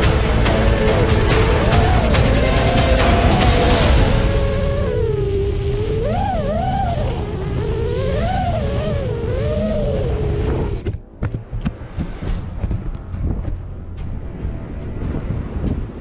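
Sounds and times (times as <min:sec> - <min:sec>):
drone motors whining: 0:00.0 - 0:11.1
wind buffeting microphone: 0:04.2 - 0:16.0.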